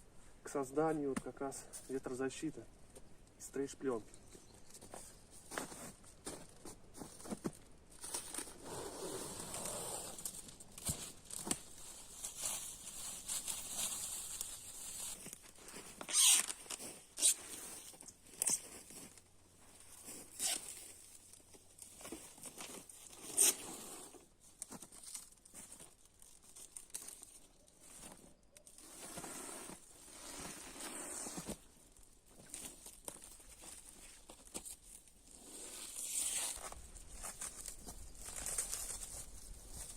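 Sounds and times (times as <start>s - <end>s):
plastic wrap crinkling: 24.8s - 28.0s.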